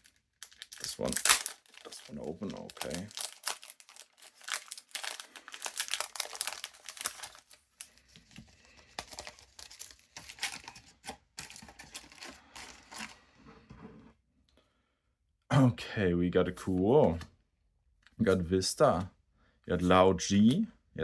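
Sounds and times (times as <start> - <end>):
foil wrapper crinkling and tearing: 0.0 - 8.0, 8.6 - 13.1.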